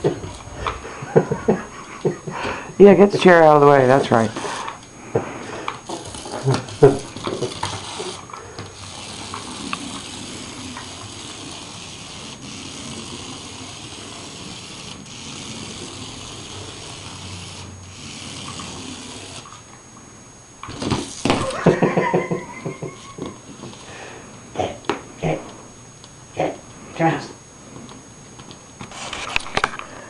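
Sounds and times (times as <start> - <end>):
toy mouse motor whirring: 3.0 - 4.8, 5.4 - 19.7.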